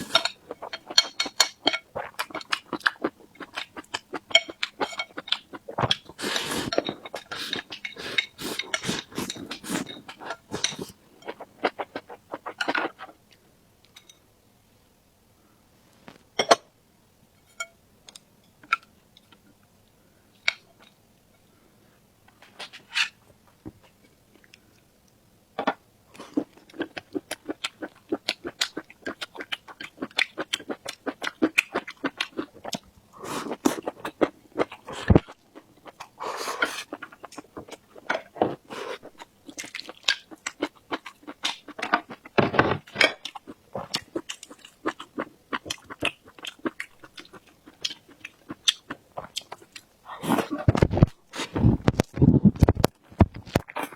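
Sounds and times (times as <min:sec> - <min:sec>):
rapid chewing with crunches: 0:00.0 - 0:13.1.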